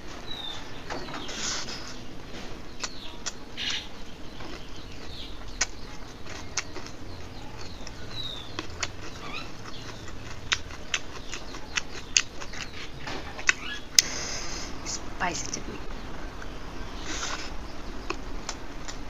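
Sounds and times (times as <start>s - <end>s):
wet chewing and lip-smacking: 2.7s - 14.2s.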